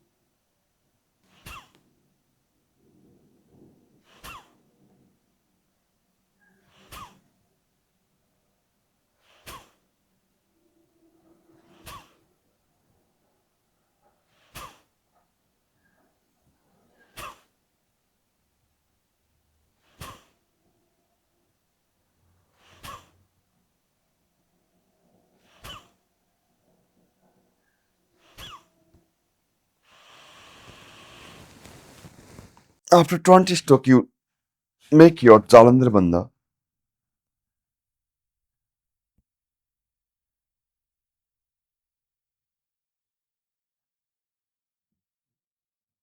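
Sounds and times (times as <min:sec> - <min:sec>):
forceful exhalations through the nose: 0:09.2 - 0:09.9, 0:14.2 - 0:15.0, 0:17.0 - 0:17.6, 0:19.7 - 0:20.4, 0:22.5 - 0:23.2, 0:29.9 - 0:32.8.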